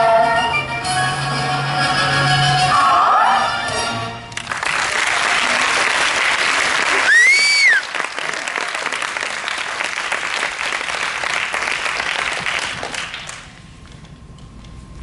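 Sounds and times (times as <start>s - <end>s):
audience applauding: 4.4s - 13.6s.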